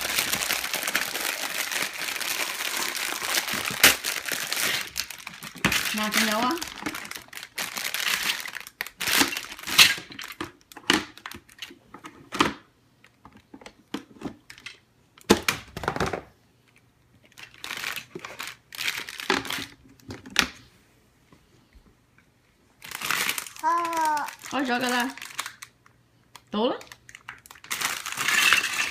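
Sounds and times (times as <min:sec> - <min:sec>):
plastic bag crinkling: 0:00.0 - 0:10.4, 0:17.3 - 0:19.8, 0:22.8 - 0:25.8, 0:26.8 - 0:28.9.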